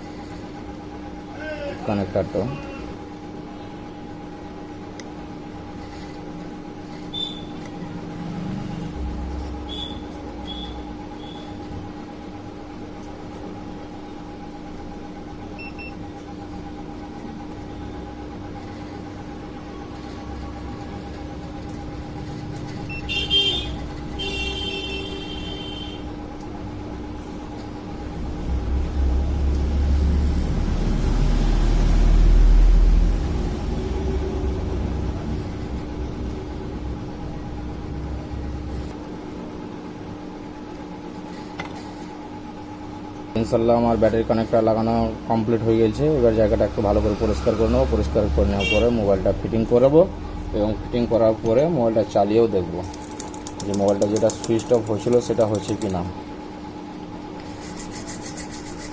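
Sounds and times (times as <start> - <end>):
electrical hum: 0.0 - 58.9
vehicle horn toot: 7.1 - 7.6, 9.6 - 11.6, 22.9 - 26.1, 48.5 - 49.1.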